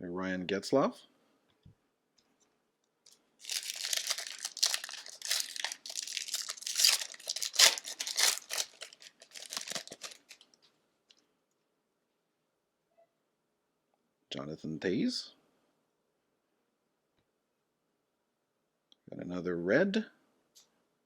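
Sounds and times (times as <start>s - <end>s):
foil wrapper tearing and crinkling: 3.4s - 10.5s.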